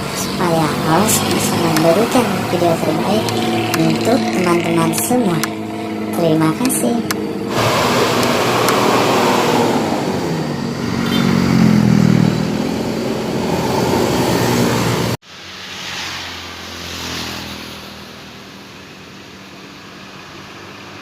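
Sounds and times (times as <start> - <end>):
bus engine revving: 0.0 - 15.2
quieter engine: 0.0 - 21.0.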